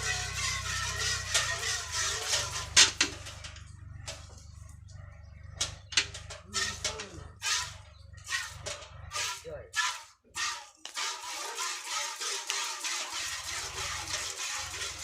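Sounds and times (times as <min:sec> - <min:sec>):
milk squirting into a pail: 0:09.2 - 0:15.0.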